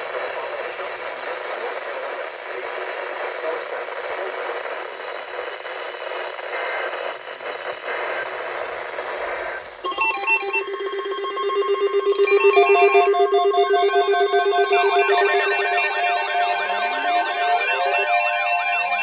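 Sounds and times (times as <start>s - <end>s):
electronic beeping melody: 9.9s - 19.0s.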